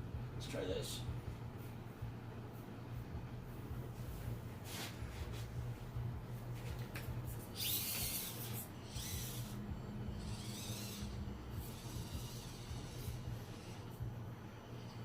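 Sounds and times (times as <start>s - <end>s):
rc car motor and gears whining: 7.4s - 14.1s.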